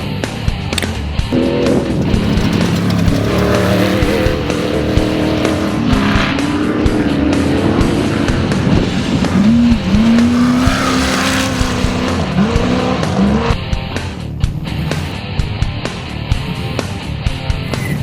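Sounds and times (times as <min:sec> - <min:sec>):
rock music: 0:00.0 - 0:18.0
engine revving hard: 0:01.3 - 0:15.2.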